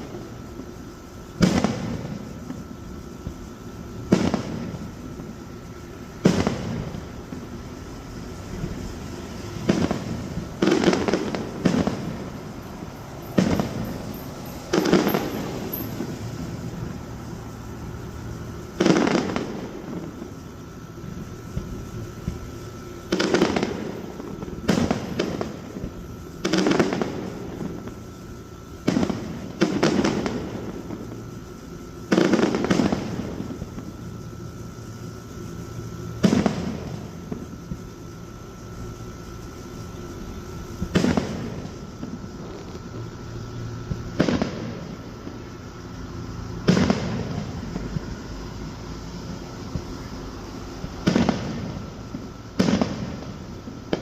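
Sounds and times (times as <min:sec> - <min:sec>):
fireworks bangs echoing: 0:01.4 - 0:02.6, 0:03.2 - 0:07.6, 0:08.4 - 0:17.4, 0:18.4 - 0:20.4, 0:21.0 - 0:28.0, 0:28.8 - 0:31.2, 0:32.1 - 0:33.9, 0:36.2 - 0:37.4, 0:40.8 - 0:42.7, 0:43.9 - 0:45.4, 0:46.6 - 0:48.1, 0:50.9 - 0:54.0.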